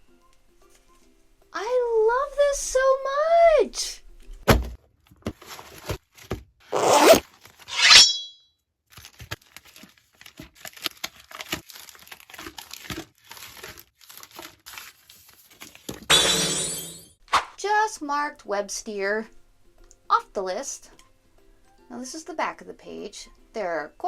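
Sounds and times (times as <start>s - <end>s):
packaging crinkling: 7.2s - 7.7s, 8.9s - 16.1s.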